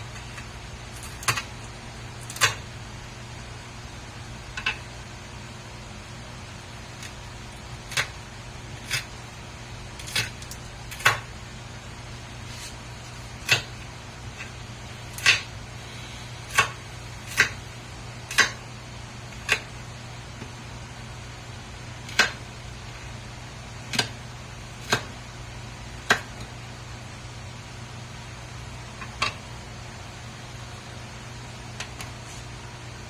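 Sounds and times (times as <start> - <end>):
steady low hum: 0.0 - 33.0
knife chopping on cutting board: 10.0 - 11.3, 13.4 - 13.8, 15.1 - 15.5, 16.5 - 17.6, 18.3 - 18.6, 19.3 - 19.7, 22.1 - 22.4, 24.8 - 25.1, 26.0 - 26.4.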